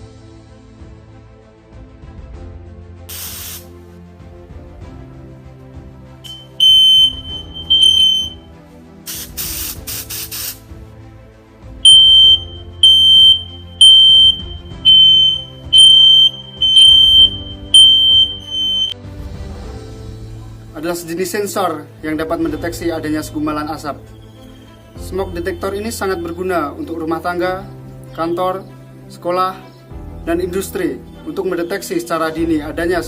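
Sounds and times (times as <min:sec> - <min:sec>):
short hissing bursts: 0:03.1 - 0:03.7, 0:09.1 - 0:10.7
smoke detector beeping: 0:06.3 - 0:08.4, 0:11.9 - 0:19.0.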